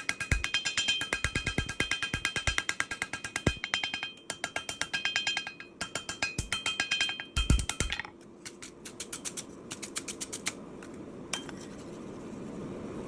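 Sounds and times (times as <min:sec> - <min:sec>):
hammer striking metal on anvil: 0:00.0 - 0:09.3.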